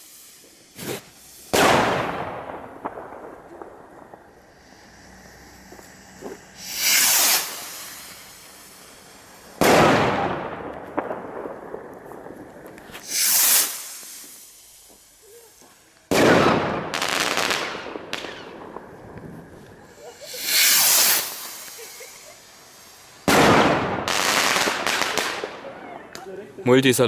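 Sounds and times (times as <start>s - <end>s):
rocket whooshing: 0.0s - 26.1s
firework bang: 0.6s - 15.0s, 15.6s - 22.4s, 23.2s - 25.7s.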